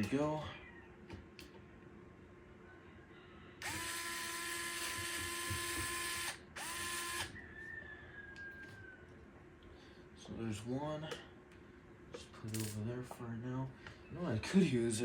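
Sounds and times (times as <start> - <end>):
electric screwdriver motor whining: 3.6 - 7.4.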